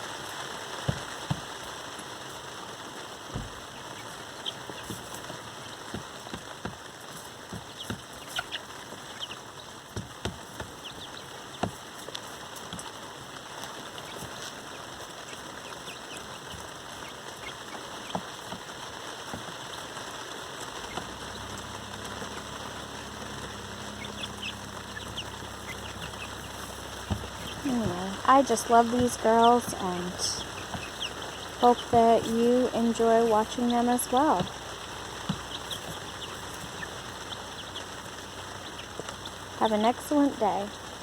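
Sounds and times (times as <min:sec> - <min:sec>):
chicks peeping: 0:00.0 - 0:41.0
rain pattering: 0:00.0 - 0:41.0
low steady hum: 0:20.6 - 0:41.0
hens clucking softly: 0:34.4 - 0:39.5.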